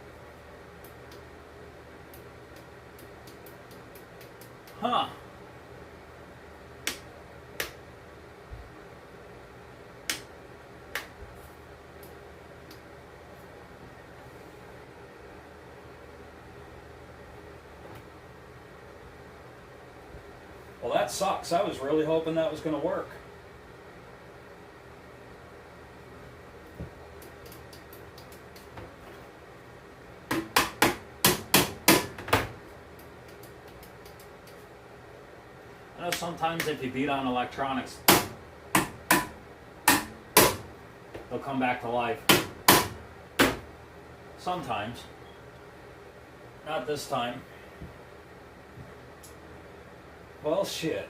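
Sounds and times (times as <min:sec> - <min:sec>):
steady low hum: 0:00.0 - 0:51.0
sharp knocks on furnace housing: 0:30.3 - 0:32.6, 0:38.1 - 0:40.7, 0:42.3 - 0:43.7
sharp clicks: 0:33.0 - 0:34.6.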